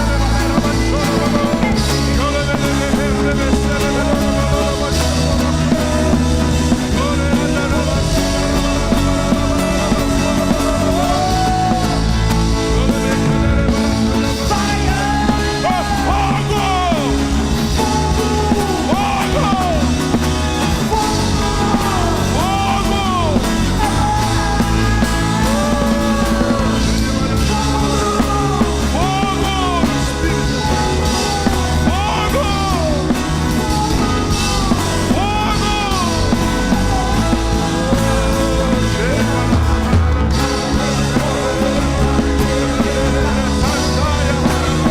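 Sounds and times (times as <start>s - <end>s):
loud rock band with singing: 0.0s - 44.9s.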